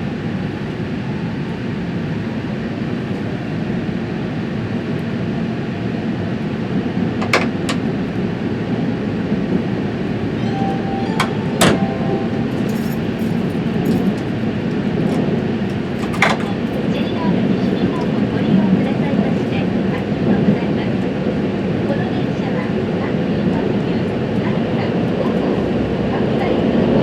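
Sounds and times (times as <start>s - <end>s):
train rumbling: 6.6s - 27.0s.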